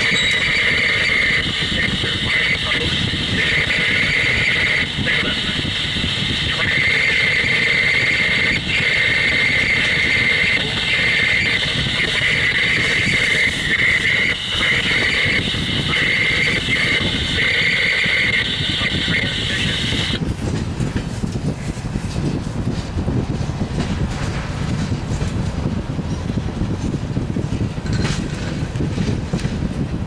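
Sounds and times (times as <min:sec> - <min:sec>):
train wheels screeching: 0:00.0 - 0:01.4
train rumbling: 0:00.0 - 0:30.0.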